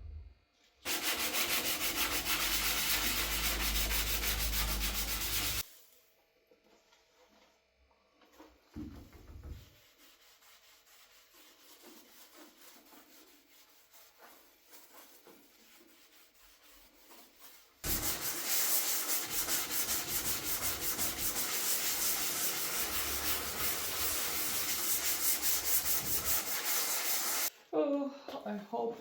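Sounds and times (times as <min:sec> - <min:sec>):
sanding body filler: 0:00.9 - 0:05.6, 0:09.4 - 0:27.5.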